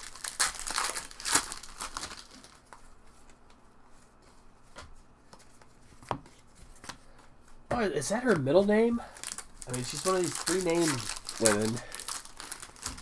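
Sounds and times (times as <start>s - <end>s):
card packaging crinkling: 0.0s - 3.0s, 8.0s - 13.0s.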